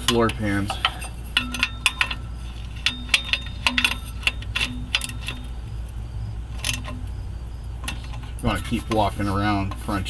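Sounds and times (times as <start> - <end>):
hand ratchet clicking: 0.0 - 7.2.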